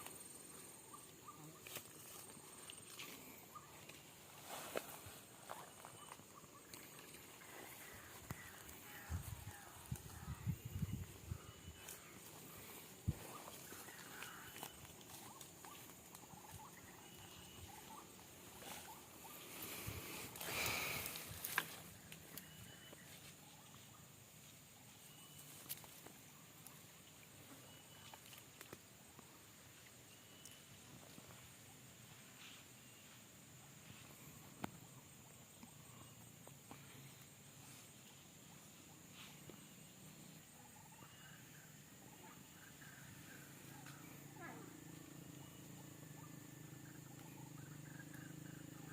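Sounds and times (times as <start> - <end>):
faint squeaky chirps: 0.2 - 28.7, 29.7 - 38.2, 38.9 - 48.9.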